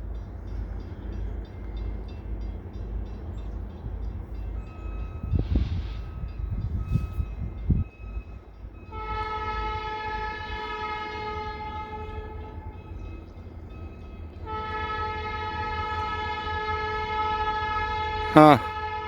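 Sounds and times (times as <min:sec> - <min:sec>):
locomotive air horn blasts: 0:08.9 - 0:12.6, 0:14.4 - 0:19.0.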